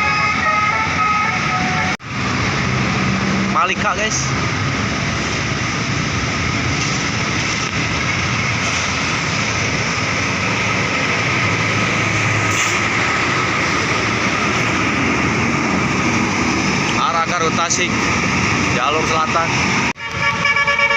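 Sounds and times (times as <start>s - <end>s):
heavy road traffic passing: 0.0s - 20.9s.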